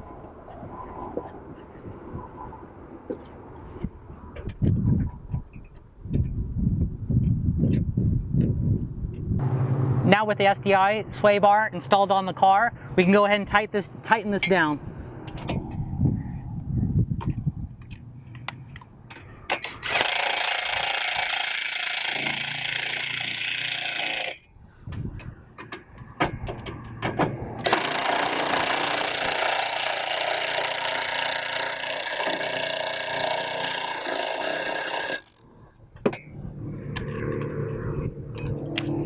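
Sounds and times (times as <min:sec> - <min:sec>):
metallic clicks and knocks: 0:15.2 - 0:15.8, 0:24.9 - 0:29.0
impact wrench running: 0:19.6 - 0:24.4, 0:27.6 - 0:35.5.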